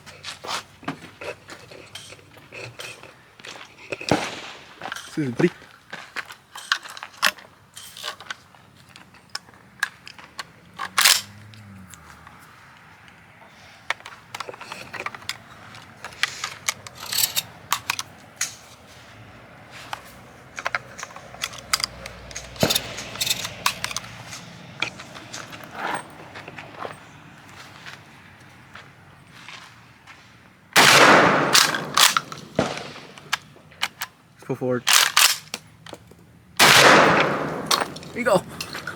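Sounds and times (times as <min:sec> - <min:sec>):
hard objects clicking: 0:09.2 - 0:11.7, 0:13.9 - 0:18.8, 0:19.9 - 0:25.0, 0:31.2 - 0:34.1, 0:34.9 - 0:36.0, 0:36.6 - 0:38.9.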